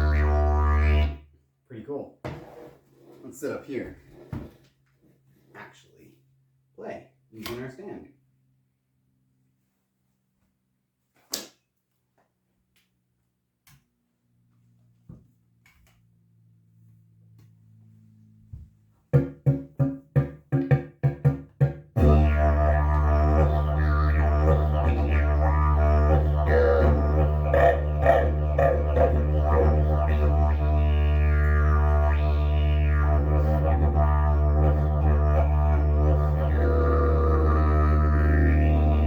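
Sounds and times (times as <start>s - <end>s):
didgeridoo toots and drone: 0.0s - 1.2s, 22.0s - 39.0s.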